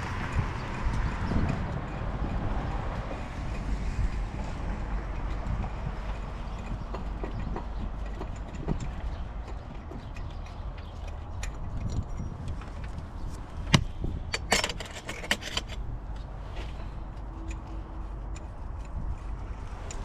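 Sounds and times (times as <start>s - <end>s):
metal hand tools clinking: 14.3s - 15.8s.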